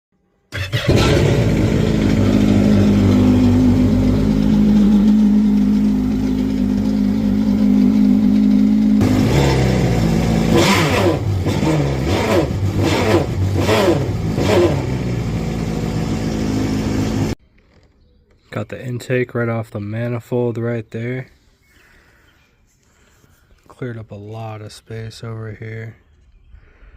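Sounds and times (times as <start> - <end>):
engine revving: 0.5 - 17.4
watercraft engine idling: 0.6 - 17.4.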